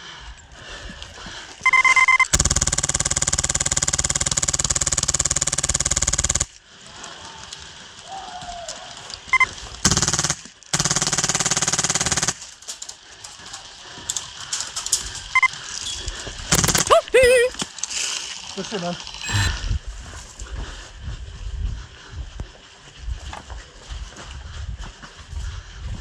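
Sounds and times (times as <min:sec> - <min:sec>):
airsoft gun firing bursts: 0:01.7 - 0:06.6, 0:09.4 - 0:12.6, 0:16.5 - 0:17.1.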